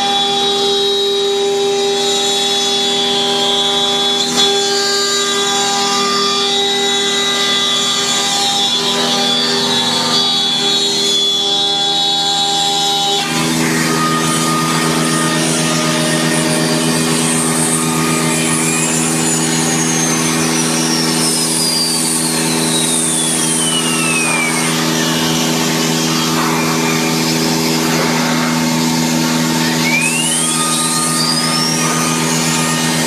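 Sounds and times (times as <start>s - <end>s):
motor drone: 0.0s - 33.0s
faint whistle changing pitch: 5.2s - 33.0s.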